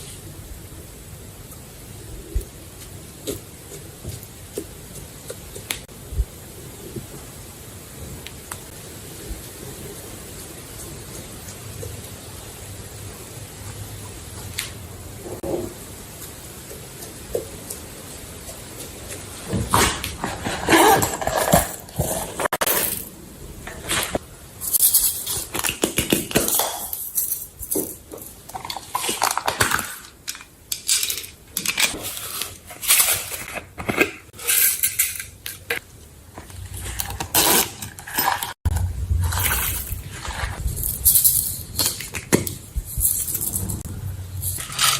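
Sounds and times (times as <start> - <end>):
utensil clinking and scraping containers: 19.5 - 23.1, 23.7 - 35.8, 36.4 - 44.9.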